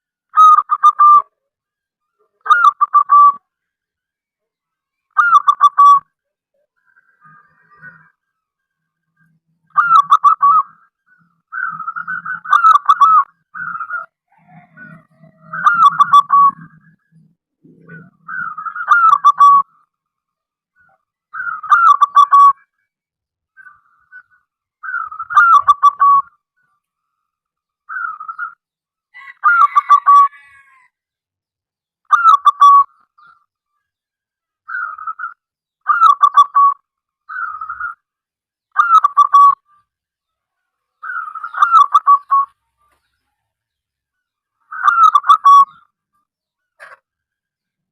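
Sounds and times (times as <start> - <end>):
dove cooing song: 0.4 - 1.4, 2.3 - 3.5, 5.1 - 6.2, 9.2 - 19.8, 20.8 - 22.8, 23.6 - 26.7, 27.9 - 28.6, 29.2 - 30.8, 32.1 - 33.4, 34.7 - 38.1, 38.7 - 39.9, 40.9 - 43.1, 44.6 - 46.0.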